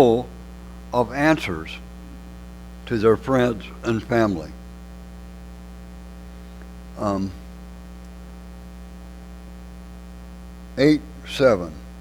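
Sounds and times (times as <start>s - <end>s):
electrical mains hum: 0.0s - 12.0s.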